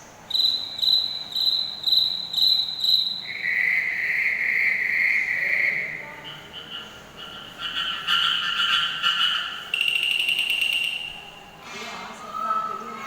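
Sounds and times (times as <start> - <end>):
insects chirping: 0.0 - 11.6
insect buzz: 0.3 - 3.4.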